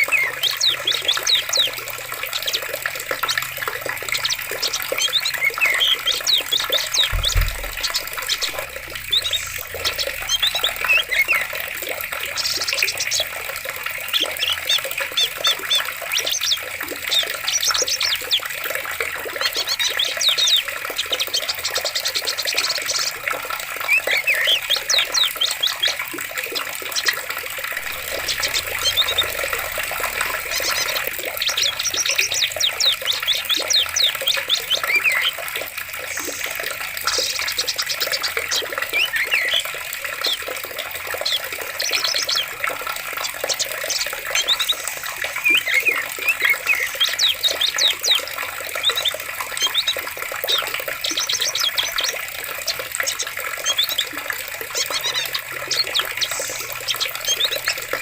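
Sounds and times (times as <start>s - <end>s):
flowing water rushing: 0.0s - 58.0s
small birds chirping and trilling: 0.0s - 58.0s
low thump: 7.0s - 9.3s.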